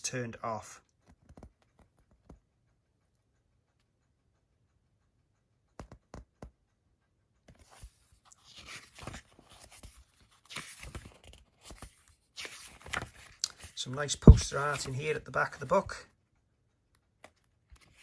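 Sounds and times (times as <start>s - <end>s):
paper pages rustling: 7.5s - 16.0s, 17.2s - 18.0s.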